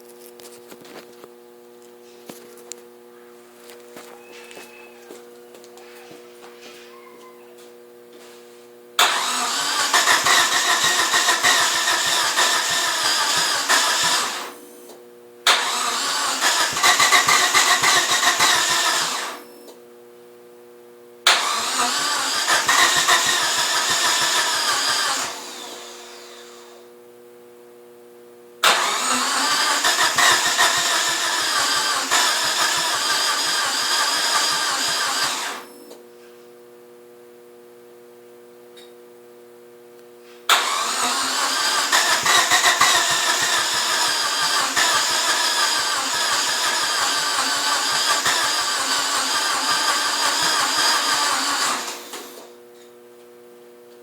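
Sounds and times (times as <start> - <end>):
starter motor cranking engine: 9.0 - 14.6, 15.5 - 19.5, 21.3 - 26.7, 28.6 - 35.8, 40.5 - 52.5.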